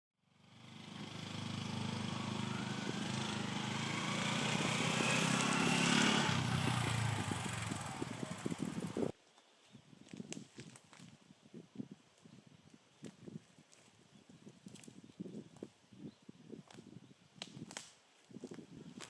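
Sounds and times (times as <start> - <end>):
motorcycle engine running: 0.3 - 9.1.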